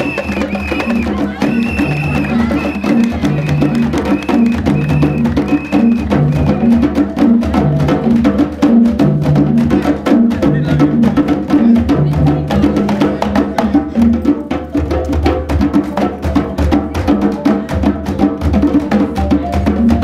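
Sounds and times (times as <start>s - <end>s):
short high tone: 0.0s - 6.8s
percussion music with bass: 0.0s - 20.0s.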